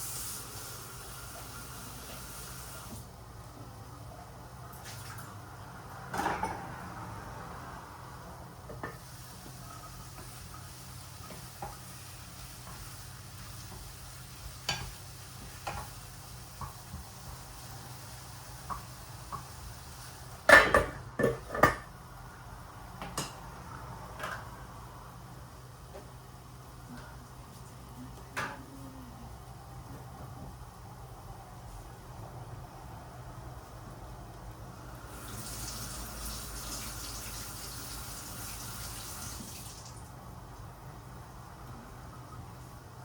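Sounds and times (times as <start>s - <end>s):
kitchenware clattering: 20.5s - 21.9s
kitchen tap running: 35.1s - 40.1s.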